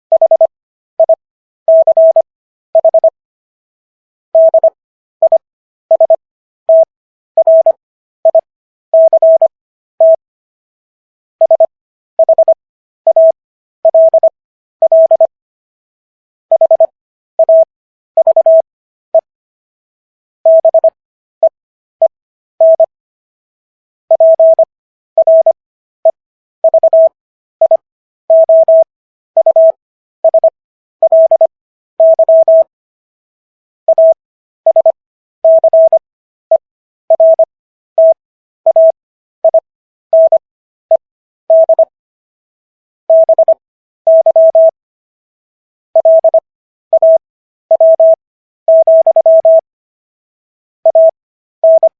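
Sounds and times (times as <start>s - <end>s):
morse code beeps: 0.1s - 2.2s, 2.8s - 3.2s, 4.4s - 10.2s, 11.4s - 15.3s, 16.5s - 18.6s, 20.5s - 21.0s, 22.6s - 22.9s, 24.1s - 32.7s, 33.9s - 36.0s, 37.1s - 41.9s, 43.1s - 44.8s, 46.0s - 49.7s, 50.9s - 51.9s.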